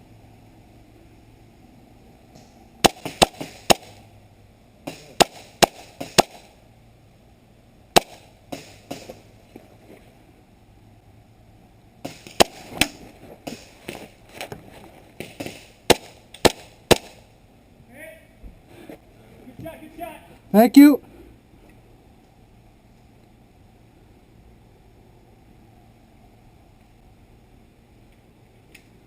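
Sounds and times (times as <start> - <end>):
airsoft pistol shots: 2.8 - 4.0, 4.8 - 6.5, 8.0 - 9.2, 12.0 - 13.7, 15.2 - 17.3.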